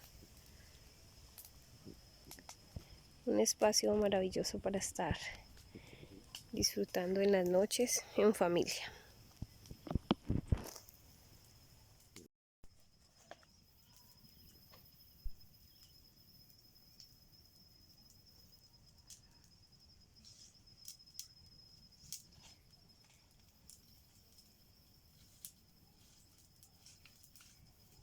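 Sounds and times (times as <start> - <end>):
frogs and insects trilling: 13.4 - 28.0.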